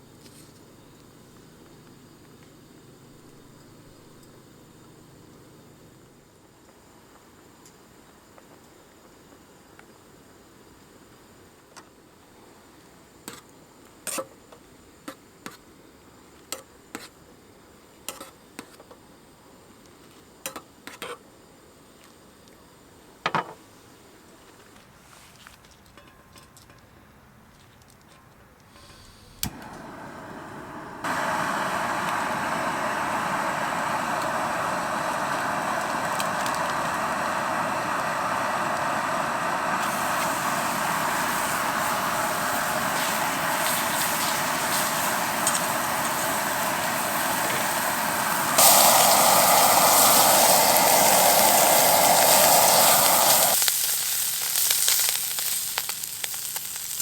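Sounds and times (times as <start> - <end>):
gas burner hissing: 28.8 - 57.0
food sizzling: 29.6 - 57.0.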